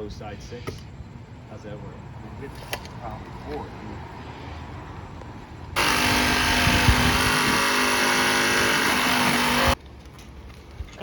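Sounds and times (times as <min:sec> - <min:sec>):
loud motor humming: 0:05.8 - 0:09.8.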